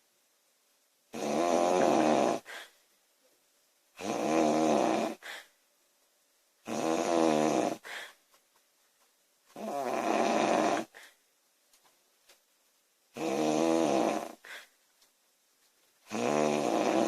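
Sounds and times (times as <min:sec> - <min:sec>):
woman snoring loudly: 0:01.1 - 0:02.6, 0:04.0 - 0:05.4, 0:06.6 - 0:08.0, 0:09.6 - 0:11.0, 0:13.2 - 0:14.5, 0:16.1 - 0:17.0
faint breath: 0:02.4 - 0:02.9, 0:05.2 - 0:05.6, 0:07.8 - 0:08.4, 0:10.8 - 0:11.3, 0:14.4 - 0:14.8.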